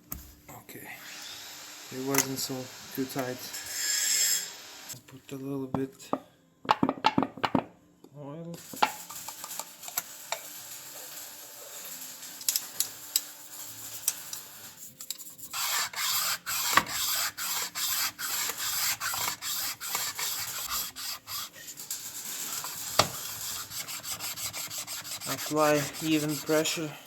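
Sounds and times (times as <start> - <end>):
hand sanding rubbing strokes: 13.2 - 27.0.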